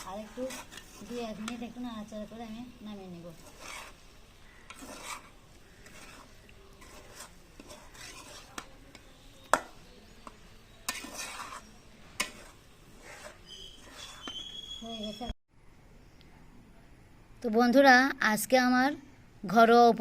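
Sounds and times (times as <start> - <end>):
spatula scraping noodles in pan: 0.0 - 15.3.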